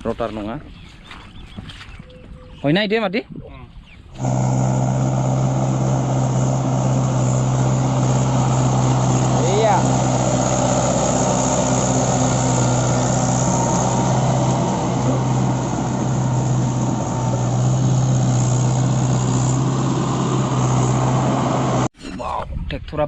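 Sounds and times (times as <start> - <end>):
tractor diesel engine running: 4.2 - 21.9.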